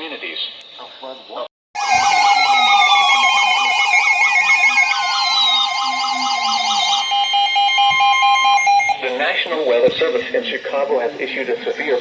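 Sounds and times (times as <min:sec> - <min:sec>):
falling tone glides: 0:01.8 - 0:09.0
warbling siren-like tones: 0:01.8 - 0:09.2
steady alert tones: 0:01.8 - 0:09.3.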